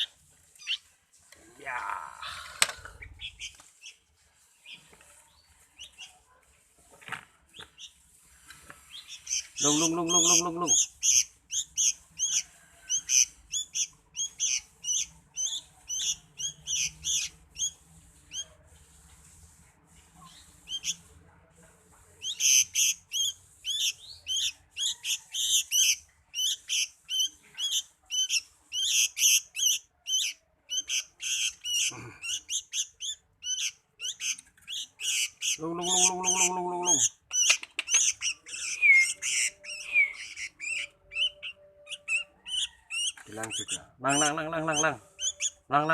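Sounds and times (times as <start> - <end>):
bird chirping high and sharp: 0.0 - 0.9, 3.0 - 4.0, 8.9 - 18.6, 20.2 - 21.1, 22.2 - 45.9.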